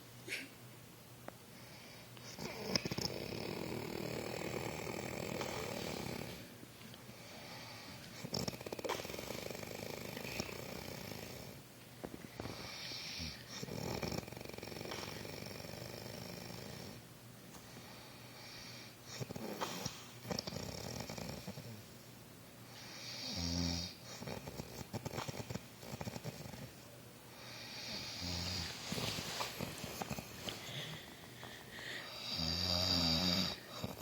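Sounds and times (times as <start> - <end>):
person snoring: 2.3 - 6.4, 27.4 - 34.0.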